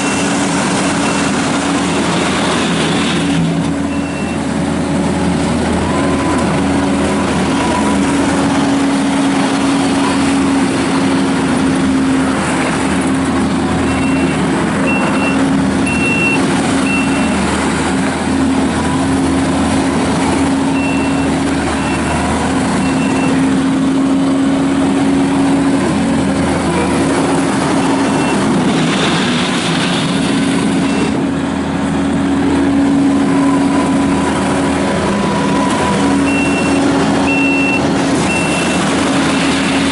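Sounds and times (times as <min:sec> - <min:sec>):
diesel engine running: 0:00.0 - 0:39.9
backup alarm beeping: 0:03.9 - 0:04.4, 0:13.8 - 0:17.5, 0:20.7 - 0:22.2, 0:22.8 - 0:23.4, 0:28.0 - 0:28.5, 0:35.5 - 0:38.9.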